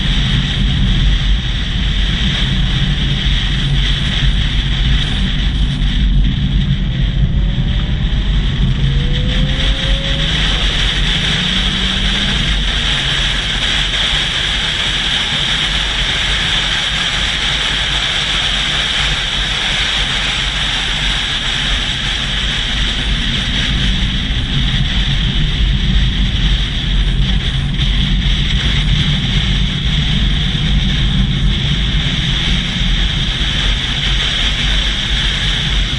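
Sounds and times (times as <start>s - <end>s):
wind rushing: 0.0s - 16.0s
low engine rumble: 0.0s - 35.9s.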